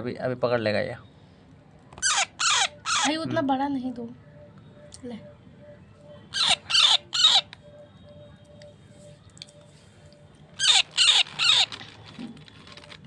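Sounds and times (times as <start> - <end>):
parrot squawking: 2.0 - 3.3, 6.3 - 7.6, 10.6 - 11.9.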